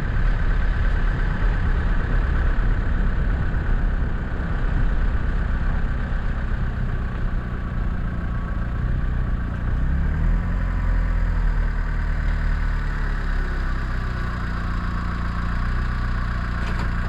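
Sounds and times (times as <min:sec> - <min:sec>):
vehicle engine humming: 0:00.0 - 0:17.0.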